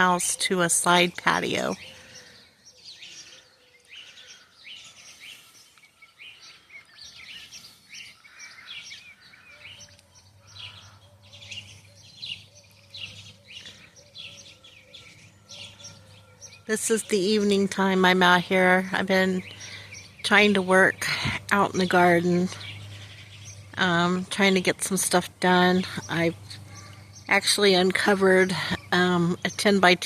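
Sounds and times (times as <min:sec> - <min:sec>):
small birds chirping: 0:00.0 - 0:30.0
faint low hum: 0:09.4 - 0:30.0.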